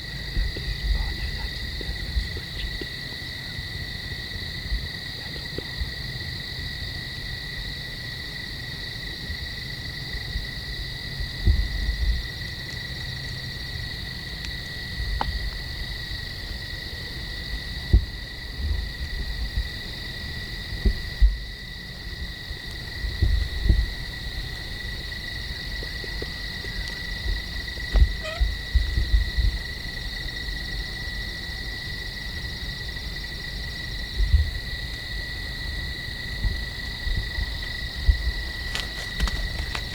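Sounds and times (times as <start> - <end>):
low thumps and rumbles: 0.0 - 3.0, 11.3 - 12.3, 17.8 - 19.8, 20.7 - 21.5, 22.9 - 30.2, 34.1 - 39.9
crickets trilling: 0.0 - 39.9.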